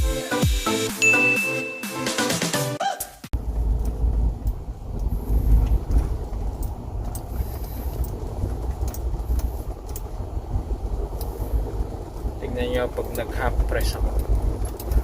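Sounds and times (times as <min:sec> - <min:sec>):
road and wind noise: 0:03.3 - 0:15.0
faint clicks: 0:11.1 - 0:11.5.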